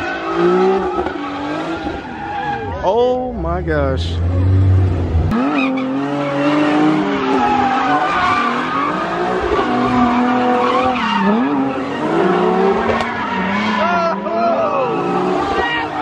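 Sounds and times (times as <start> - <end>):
car engine revving hard: 4.1 - 16.0.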